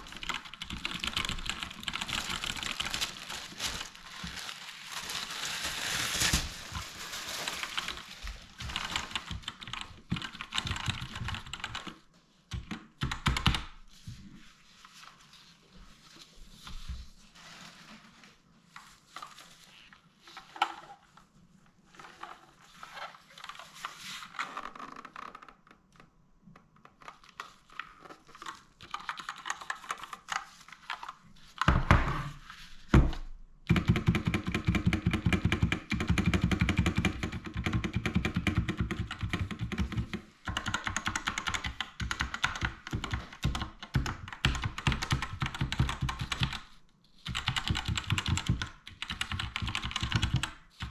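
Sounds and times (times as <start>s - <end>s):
fast keyboard typing: 0.0s - 3.2s, 8.6s - 13.8s, 33.7s - 50.9s
faint handling sounds: 2.1s - 9.4s, 13.8s - 24.8s.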